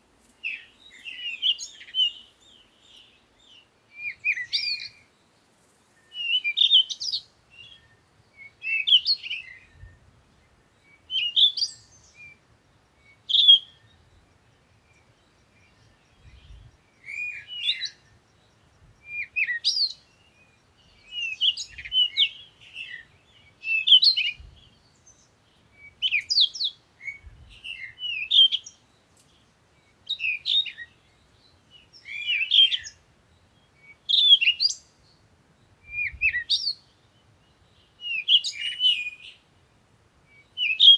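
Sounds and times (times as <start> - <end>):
small bird chirping: 13.0 - 35.2.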